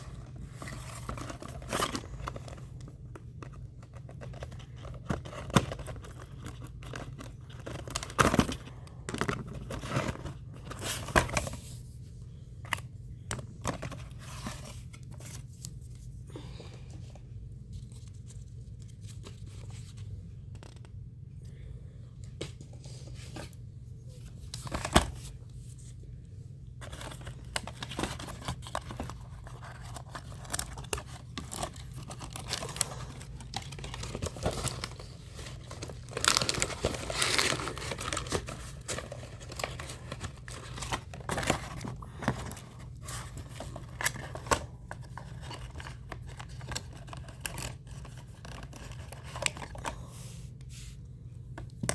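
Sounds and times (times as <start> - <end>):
steady low hum: 0.0 - 51.9
cardboard and plastic tearing: 26.8 - 49.8.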